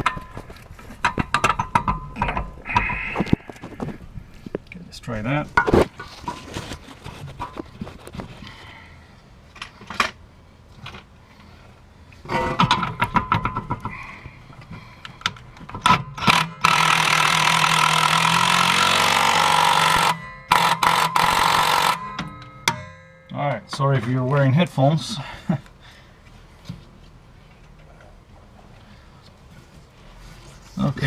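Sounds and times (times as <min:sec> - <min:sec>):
power tool driving bolt: 0:15.7 - 0:22.4.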